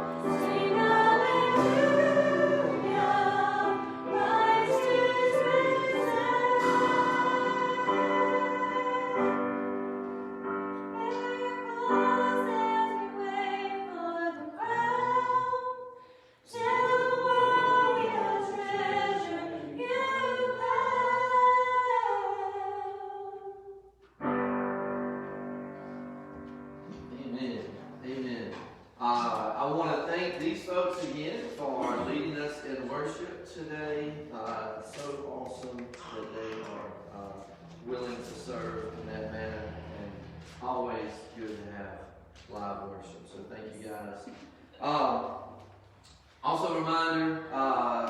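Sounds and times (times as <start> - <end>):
group singing worship song: 0.0 - 10.3, 11.0 - 23.8
keyboard chords: 0.0 - 13.9, 24.1 - 28.8.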